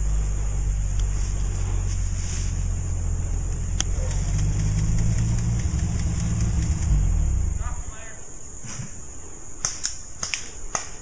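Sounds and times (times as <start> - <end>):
low rumble on microphone: 0.0 - 9.3
high hiss: 0.0 - 11.0
sharp crack: 3.7 - 7.2, 9.6 - 11.0.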